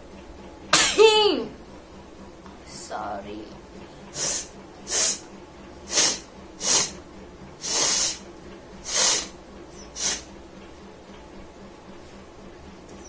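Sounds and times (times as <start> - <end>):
woman blowing her nose: 5.9 - 6.9, 8.9 - 9.3.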